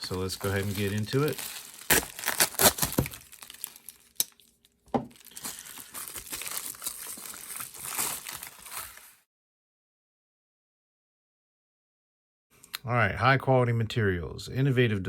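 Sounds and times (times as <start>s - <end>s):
packaging crinkling and tearing: 0.0s - 9.2s.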